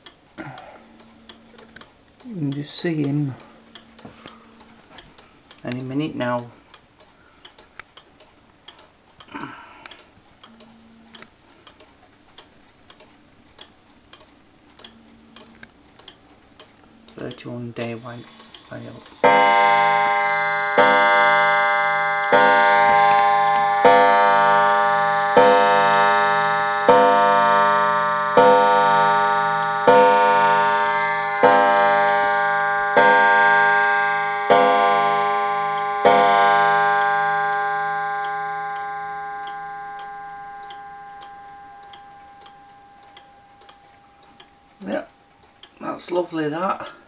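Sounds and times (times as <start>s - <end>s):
pendulum clock ticking: 0.0s - 47.0s
clock striking on gong: 17.8s - 44.8s.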